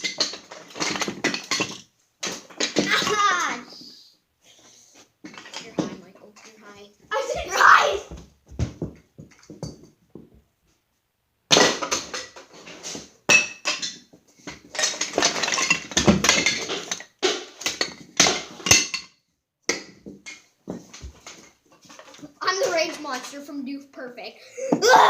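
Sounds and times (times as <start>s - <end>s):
plastic toy pieces clattering: 0.0s - 3.5s, 13.7s - 19.0s.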